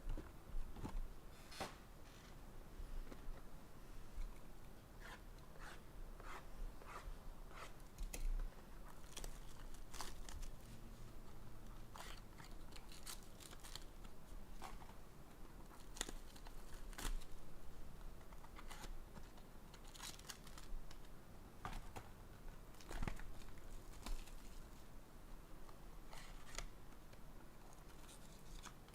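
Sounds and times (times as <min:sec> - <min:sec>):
plastic wrap crinkling: 0:08.9 - 0:10.6, 0:19.8 - 0:21.0.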